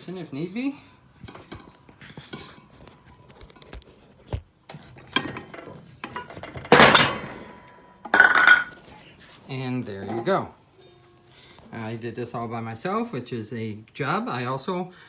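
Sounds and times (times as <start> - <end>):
metallic clatter and knocks: 5.1 - 8.8.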